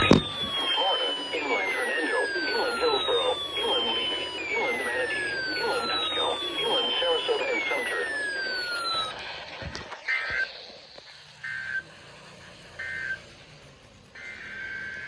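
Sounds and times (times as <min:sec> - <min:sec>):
falling whistle: 0:00.0 - 0:10.6, 0:11.4 - 0:11.9, 0:12.7 - 0:13.4, 0:14.2 - 0:15.0
clicks: 0:00.0 - 0:11.1
shrill digital data tones: 0:00.0 - 0:15.0.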